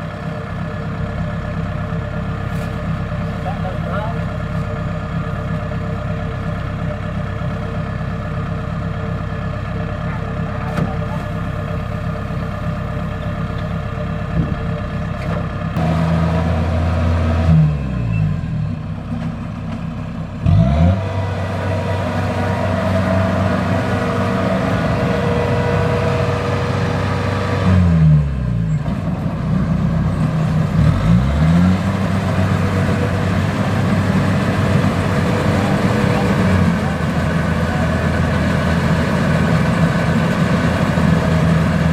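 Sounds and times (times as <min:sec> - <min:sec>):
combine harvester engine running: 0:00.0 - 0:41.9.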